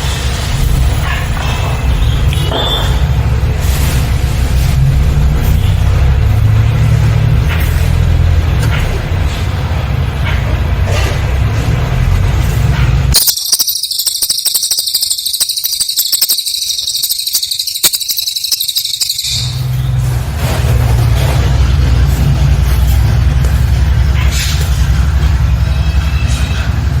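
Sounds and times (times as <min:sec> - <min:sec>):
bird high rapid trill: 0:13.2 - 0:20.0.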